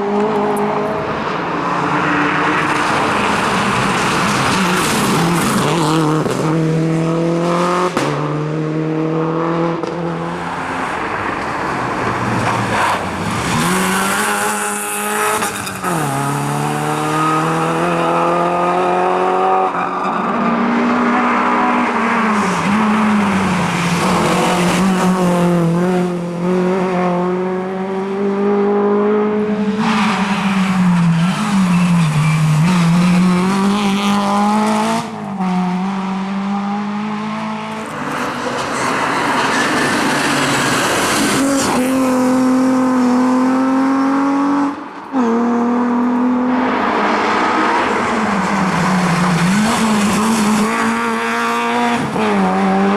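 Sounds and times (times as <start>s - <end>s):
car engine revving hard: 12.7s - 30.2s, 32.5s - 38.2s, 38.9s - 52.9s.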